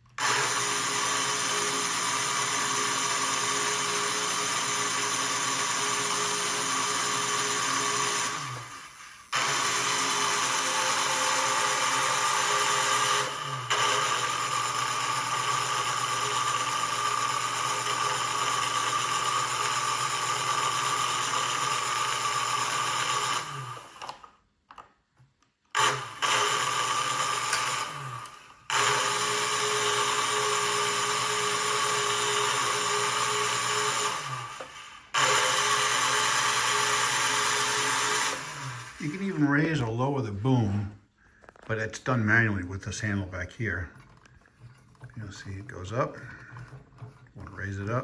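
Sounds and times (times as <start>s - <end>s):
electric motor whirring: 0.2s - 24.3s, 25.8s - 39.9s.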